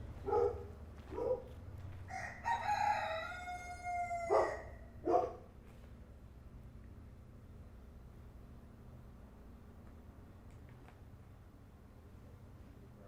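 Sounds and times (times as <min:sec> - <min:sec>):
rooster crowing: 0:02.1 - 0:04.9.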